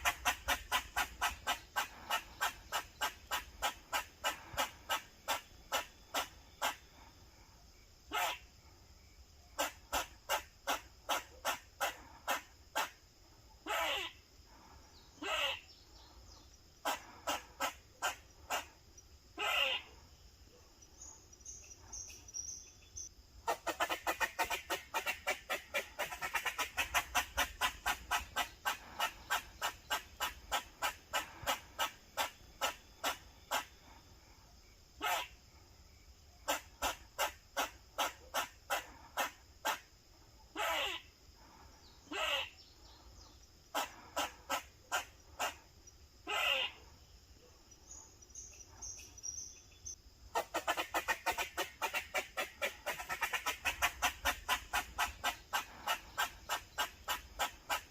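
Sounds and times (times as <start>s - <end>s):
squirrel barking: 0.0s - 6.8s, 8.1s - 8.5s, 9.6s - 13.0s, 13.6s - 14.2s, 15.2s - 15.7s, 16.8s - 18.8s, 19.4s - 33.8s, 35.0s - 35.4s, 36.4s - 39.9s, 40.5s - 41.1s, 42.1s - 42.6s, 43.7s - 45.6s, 46.2s - 47.0s, 50.3s - 57.9s.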